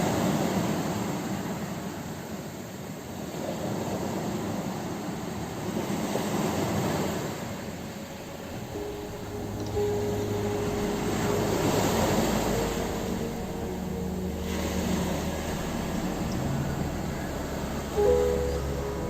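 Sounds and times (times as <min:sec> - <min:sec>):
ocean waves washing onto shore: 0:05.8 - 0:19.0
soft ambient music: 0:07.6 - 0:19.0.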